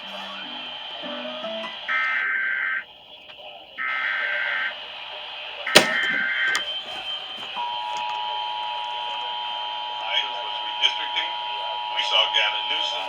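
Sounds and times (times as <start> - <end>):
screeching data tones: 0.0 - 3.2
sharp click: 5.8 - 6.6.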